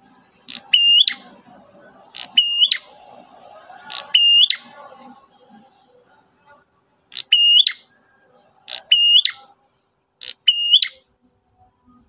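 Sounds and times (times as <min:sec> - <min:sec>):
bird calling high whistles: 0:00.5 - 0:01.2, 0:02.2 - 0:02.9, 0:03.9 - 0:04.6, 0:07.2 - 0:07.9, 0:08.7 - 0:09.4, 0:10.2 - 0:11.0.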